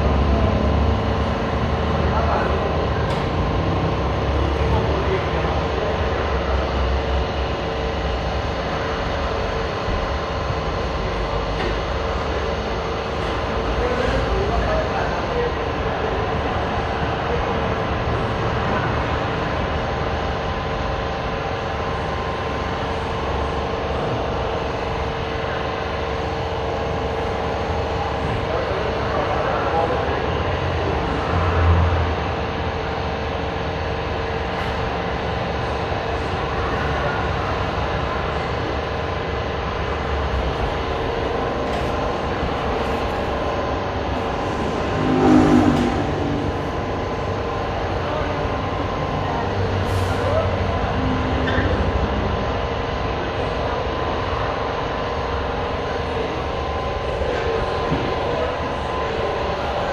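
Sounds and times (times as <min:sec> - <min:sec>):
air compressor running: 0:00.0 - 0:59.9
steady mechanical hum: 0:00.0 - 0:59.9
brief loud pitched sound: 0:44.2 - 0:47.5.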